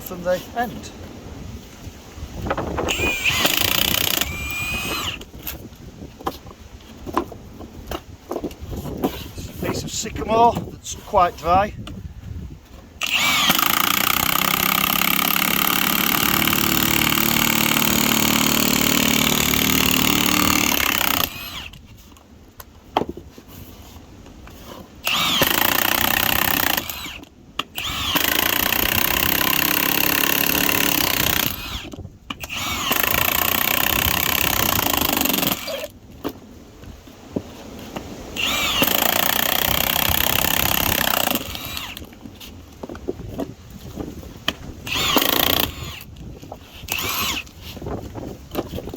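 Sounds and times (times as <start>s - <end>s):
impact wrench driving bit into log: 2.8s - 5.7s, 13.0s - 21.8s, 25.0s - 36.0s, 38.4s - 42.1s, 44.8s - 46.1s, 46.8s - 47.6s.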